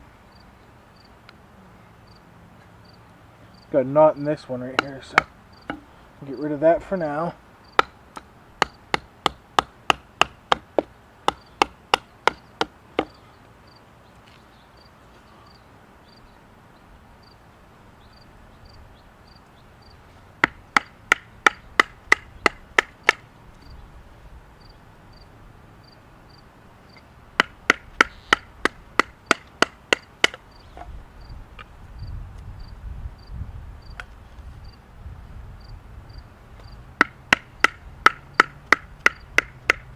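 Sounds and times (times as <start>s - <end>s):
knife batoned through wood knocks: 4.8s - 5.9s.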